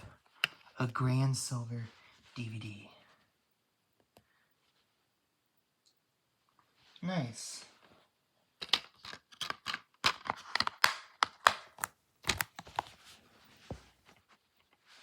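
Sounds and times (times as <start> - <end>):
plastic case clicks and snaps: 8.6 - 12.9.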